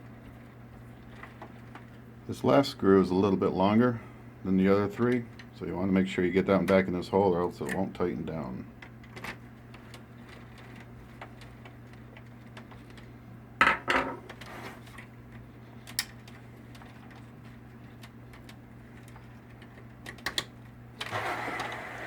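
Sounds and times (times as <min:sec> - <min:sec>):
steady low hum: 0:00.0 - 0:21.0
rustling scrape: 0:14.3 - 0:15.0.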